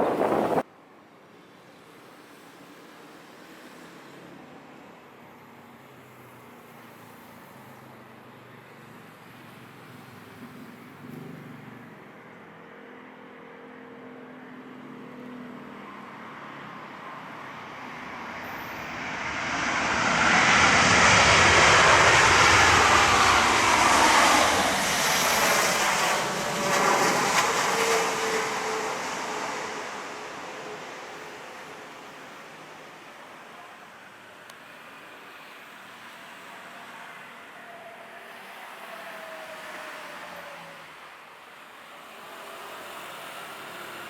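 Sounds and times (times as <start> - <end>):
jet airliner passing: 0.0 - 0.6, 17.0 - 33.4.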